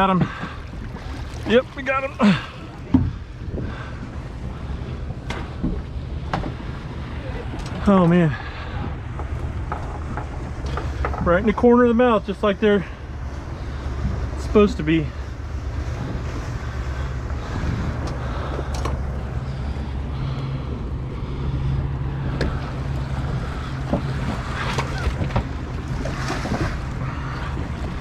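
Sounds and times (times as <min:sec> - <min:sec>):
wind buffeting microphone: 0:00.0 - 0:12.0, 0:12.6 - 0:28.0
steady low rumble: 0:00.0 - 0:28.0
water lapping against boat: 0:00.0 - 0:28.0.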